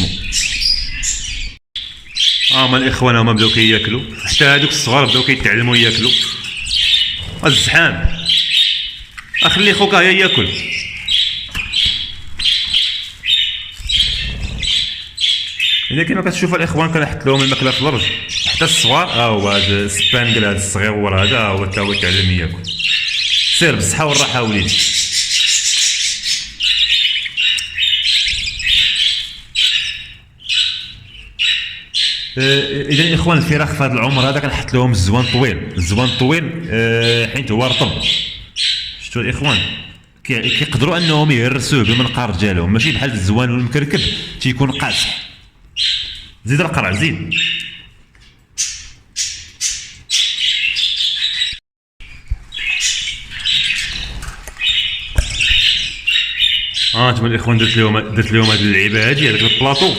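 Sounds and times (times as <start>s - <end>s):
budgerigars squawking: 0.0s - 59.9s.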